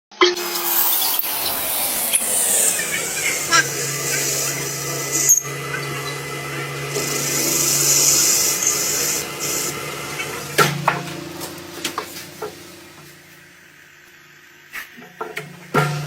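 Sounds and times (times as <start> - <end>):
cutting tool scraping metal: 0.3 - 13.3
hiss: 0.4 - 11.3
lathe motor hum: 0.4 - 13.8
sharp knocks: 2.3 - 13.2, 15.2 - 16.0.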